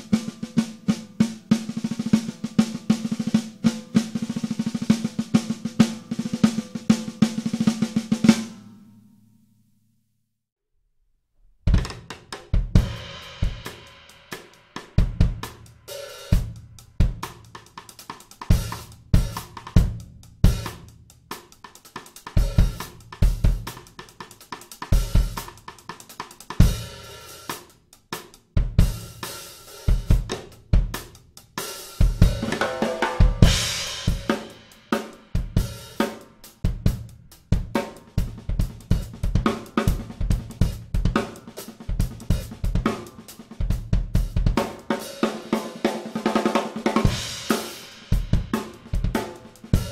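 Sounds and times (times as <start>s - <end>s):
drum kit playing a groove: 0.0s - 8.6s, 11.7s - 49.9s
cymbals: 31.6s - 36.3s, 44.6s - 49.9s.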